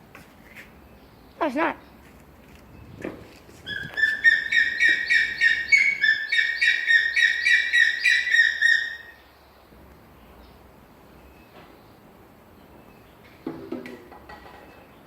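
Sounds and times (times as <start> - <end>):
bird calling sharp notes: 3.7 - 9.2.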